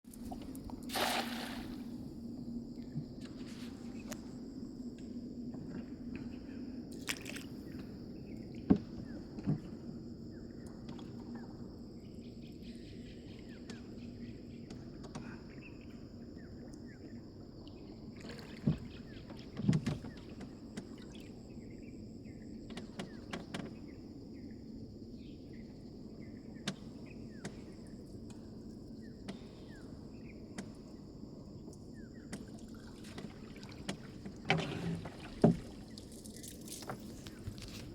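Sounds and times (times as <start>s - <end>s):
insects buzzing: 0.1s - 37.9s
sharp knocks or splashes: 0.9s - 1.9s, 33.1s - 37.1s.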